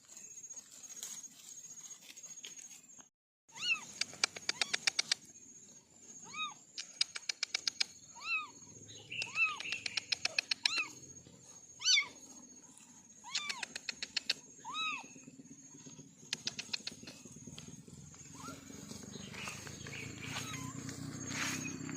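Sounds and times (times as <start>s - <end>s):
kittens mewing: 3.5s - 5.2s, 6.2s - 8.6s, 9.2s - 11.0s, 11.8s - 12.2s, 13.2s - 15.1s, 19.9s - 20.9s.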